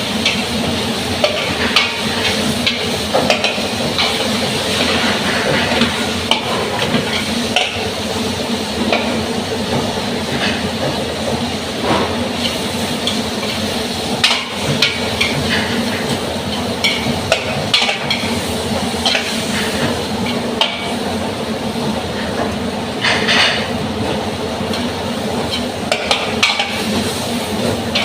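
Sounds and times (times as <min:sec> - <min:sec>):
food sizzling in a pan: 0:00.0 - 0:09.3, 0:11.6 - 0:21.1, 0:24.6 - 0:28.0.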